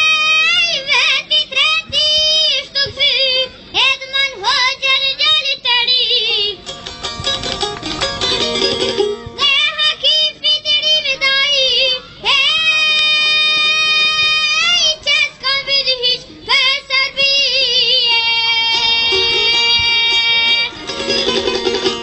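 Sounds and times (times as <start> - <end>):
boy singing: 0.0 - 6.6, 9.2 - 20.8
instrumental accompaniment: 6.6 - 10.3, 18.7 - 22.0.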